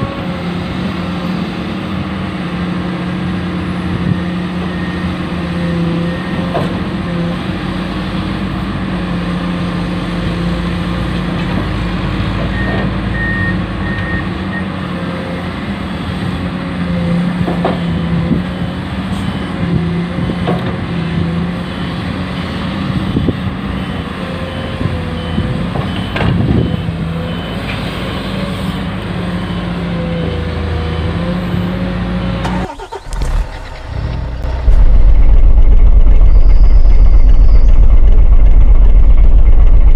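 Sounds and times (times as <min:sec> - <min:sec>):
high reversing beeps: 0:32.7 - 0:39.9.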